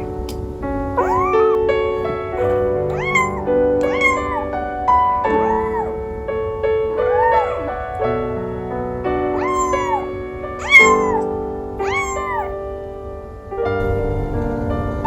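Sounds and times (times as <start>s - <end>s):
piano music: 0.0s - 15.0s
kitten meowing: 1.0s - 1.6s, 2.3s - 6.0s, 7.0s - 7.8s, 9.4s - 12.6s.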